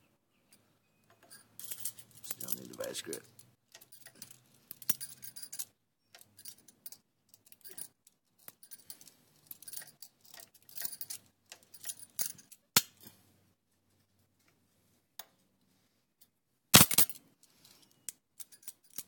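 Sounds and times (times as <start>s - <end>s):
metal hand tools clinking: 1.2s - 5.6s.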